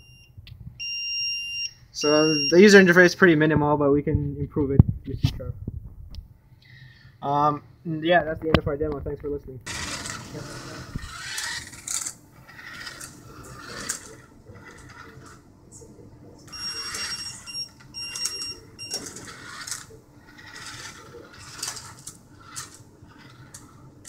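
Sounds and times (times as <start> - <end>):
short high electronic beeps: 16.5 - 19.0.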